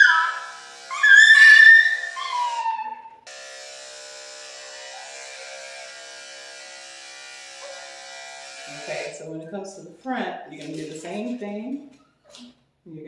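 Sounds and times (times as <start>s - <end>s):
electric clippers buzzing: 0.0s - 2.4s, 3.2s - 9.3s
puppy howling cries: 0.0s - 3.2s, 4.9s - 5.4s.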